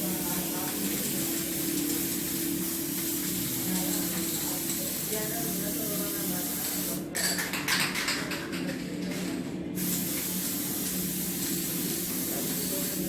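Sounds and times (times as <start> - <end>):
spraying hiss: 9.8 - 13.0.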